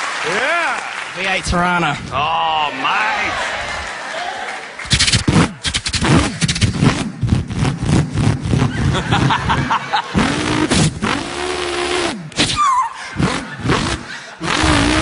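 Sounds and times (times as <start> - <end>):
man imitating car engine: 10.2 - 15.0.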